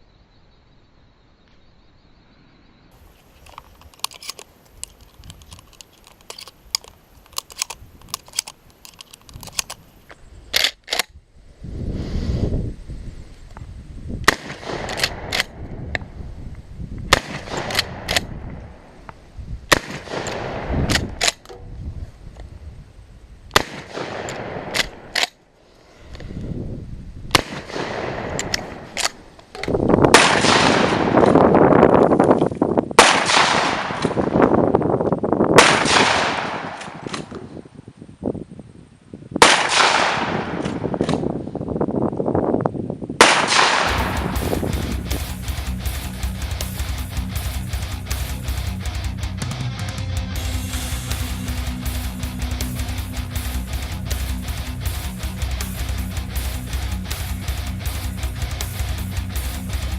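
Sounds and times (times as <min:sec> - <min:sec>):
shotgun firing: 0:14.2 - 0:15.6, 0:17.1 - 0:18.4, 0:19.7 - 0:21.4, 0:23.6 - 0:25.2, 0:27.3 - 0:29.1, 0:30.1 - 0:31.4, 0:33.0 - 0:34.4, 0:35.6 - 0:37.3, 0:39.4 - 0:41.3, 0:43.2 - 0:45.2
rush of noise after shots: 0:43.2 - 0:59.9.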